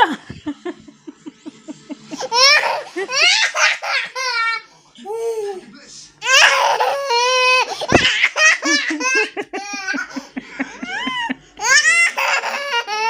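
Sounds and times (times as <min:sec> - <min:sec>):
toddler laughing: 0:02.1 - 0:04.5, 0:06.2 - 0:13.0.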